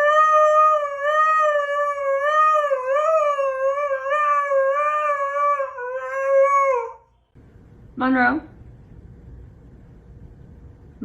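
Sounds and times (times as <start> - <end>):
dog howling: 0.0 - 7.1.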